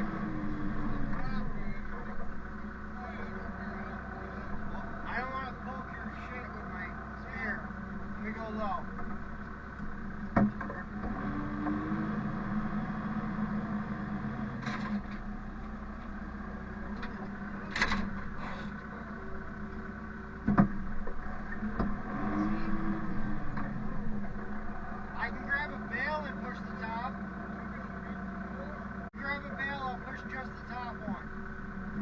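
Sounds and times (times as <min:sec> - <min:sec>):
engine running: 0:00.0 - 0:32.0
sharp knocks: 0:20.4 - 0:20.8.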